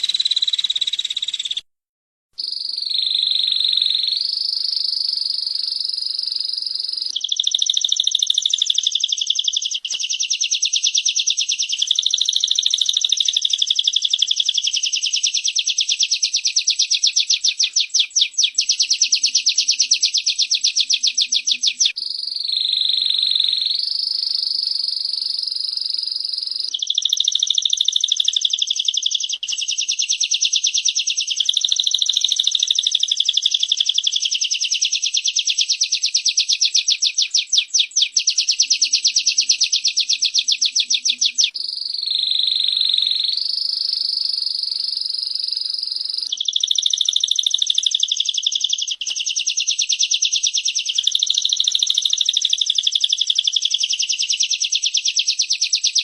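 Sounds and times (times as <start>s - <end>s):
birds chirping high-pitched: 0.0s - 1.6s, 2.4s - 56.0s
fast rattling bird trill: 0.0s - 1.6s, 2.4s - 56.0s.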